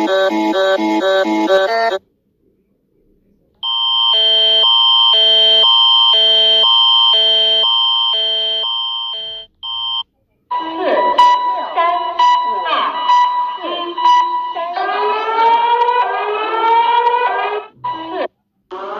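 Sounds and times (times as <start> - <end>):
fast-pulsing electronic alarm: 0.0 - 2.0, 3.6 - 18.9
high alarm tone over pulsing tones: 0.0 - 2.0, 3.6 - 18.9.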